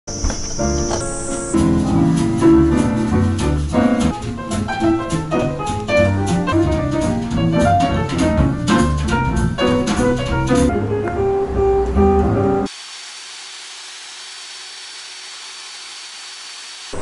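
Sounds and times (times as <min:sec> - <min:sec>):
instrumental music with drums: 0:01.4 - 0:10.7.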